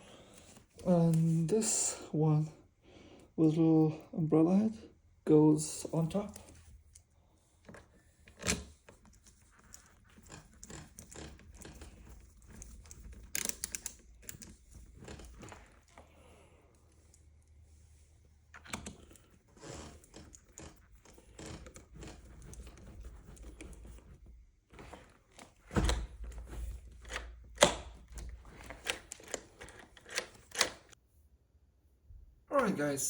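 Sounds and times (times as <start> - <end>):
metal door lock parts rattling: 8.2 - 15.9, 25.2 - 31.0.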